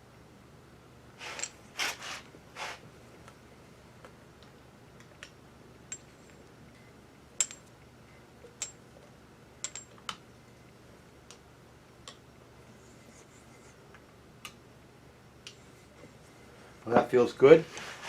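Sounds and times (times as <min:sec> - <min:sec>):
metal tools clicking and ringing: 0:08.6 - 0:08.8.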